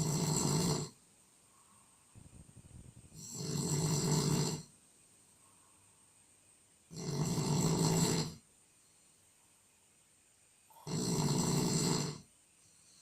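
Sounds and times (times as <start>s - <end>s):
person snoring: 0.0s - 1.0s, 3.1s - 4.7s, 6.9s - 8.4s, 10.7s - 12.3s.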